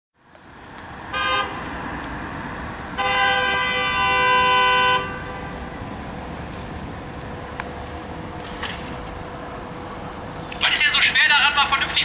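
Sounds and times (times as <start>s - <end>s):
passing traffic: 0.2s - 12.0s
vehicle horn honking: 1.1s - 1.6s, 3.0s - 5.9s.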